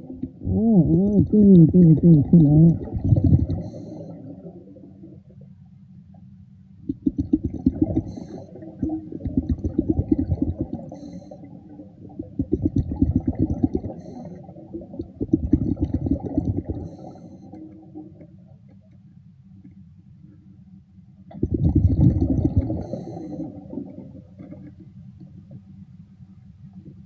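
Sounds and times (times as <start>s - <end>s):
bubbling underwater exhalation: 0.1s - 4.7s, 6.8s - 11.0s, 12.1s - 17.1s, 21.3s - 24.7s
breathing regulator hiss: 3.6s - 4.2s.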